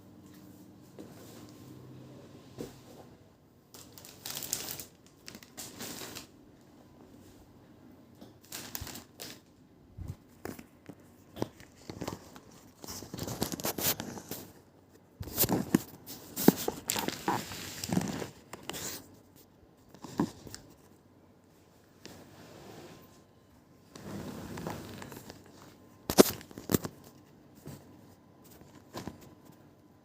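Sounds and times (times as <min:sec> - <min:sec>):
close rustling and crinkling: 0:08.4 - 0:21.0, 0:23.8 - 0:29.8.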